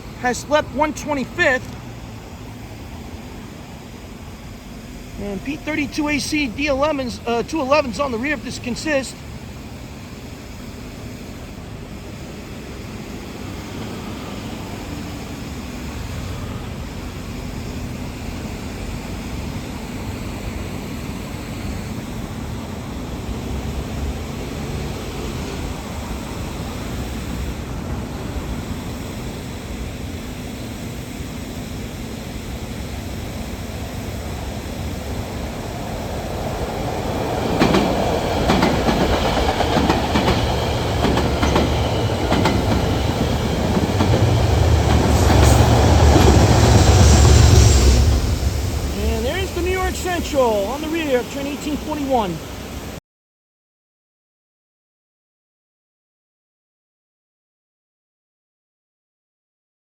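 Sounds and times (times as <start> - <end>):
passenger train rumbling: 0.0 - 53.0
wheels clacking over rail joints: 36.3 - 51.8.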